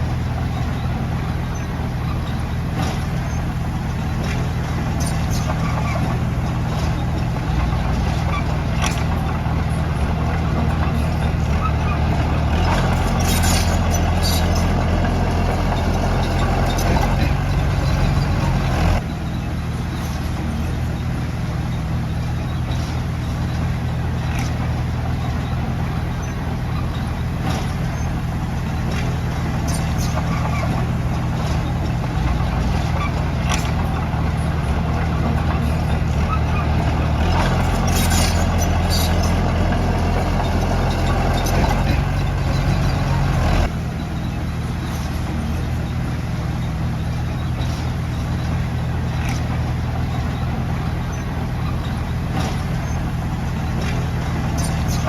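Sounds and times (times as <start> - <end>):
heavy diesel engine running: 0.0 - 55.0
metallic clicks and squeaks: 0.4 - 55.0.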